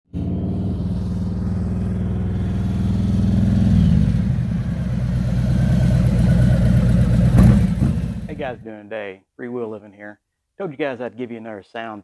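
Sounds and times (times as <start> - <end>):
motorcycle engine idling: 4.4 - 8.5.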